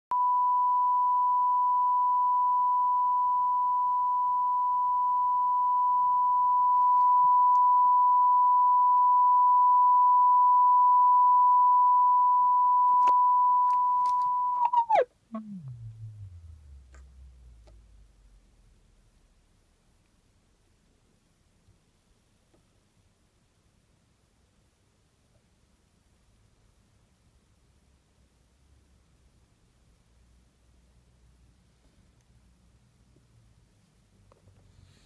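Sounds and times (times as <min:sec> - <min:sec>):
sine test tone: 0:00.1 - 0:18.8
clicks: 0:12.9 - 0:18.0
tone gliding down to low hum: 0:14.6 - 0:19.3.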